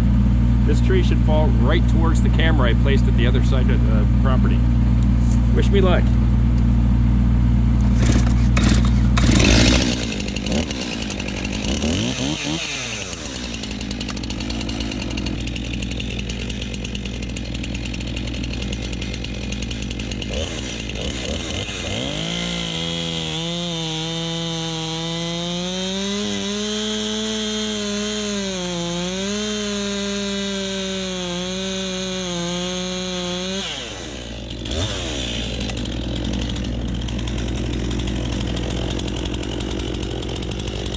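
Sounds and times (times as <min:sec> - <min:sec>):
chainsaw cutting wood: 0:07.8 - 0:40.9.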